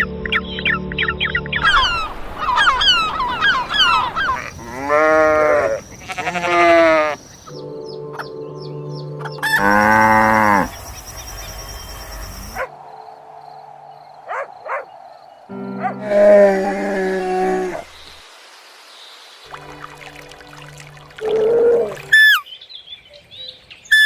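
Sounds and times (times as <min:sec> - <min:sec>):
high falling bird calls: 0:00.3 - 0:24.0
sheep bleating: 0:04.6 - 0:07.2.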